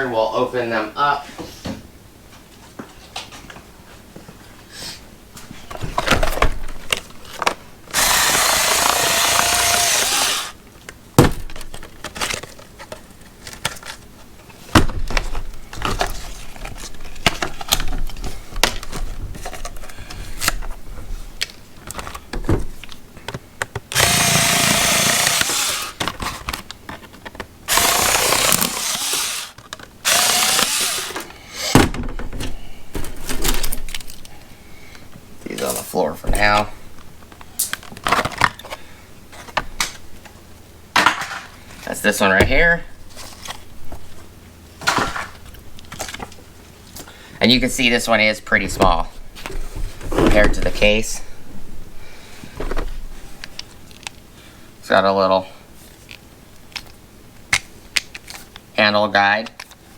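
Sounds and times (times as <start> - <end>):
cutter cutting plastic packaging: 7.9 - 10.6, 23.9 - 26.6, 27.7 - 31.3.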